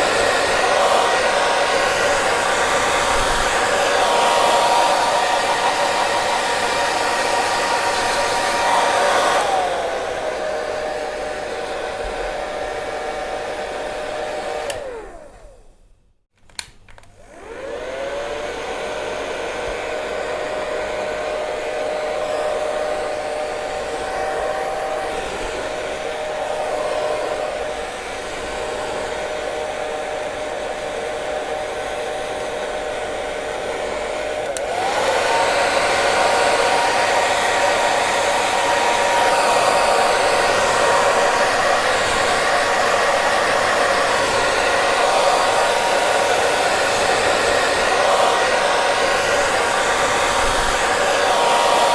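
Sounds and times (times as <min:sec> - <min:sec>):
hair dryer blowing: 0:00.0 - 0:15.8, 0:16.6 - 0:51.9.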